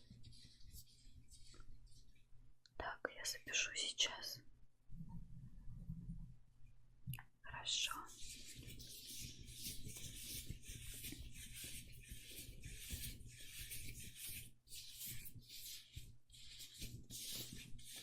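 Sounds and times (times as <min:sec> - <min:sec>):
rubbing strokes: 0:00.0 - 0:02.2, 0:08.0 - 0:18.0.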